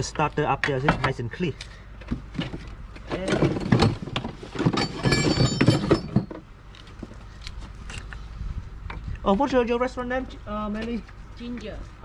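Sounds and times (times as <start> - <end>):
metal tools clinking: 3.1 - 6.4
metal ringing: 4.7 - 6.4.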